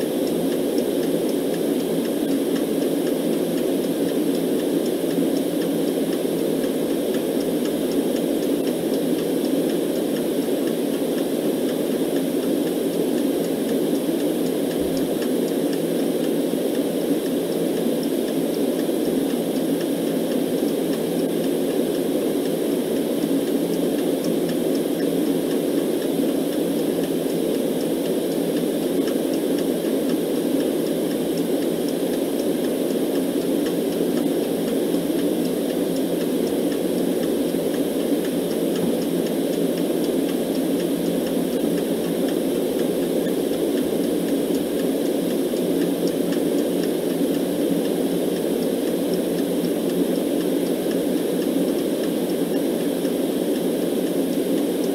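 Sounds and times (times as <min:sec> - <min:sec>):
faint clock ticking: 0:00.0 - 0:54.9
steady white noise hiss: 0:00.0 - 0:54.9.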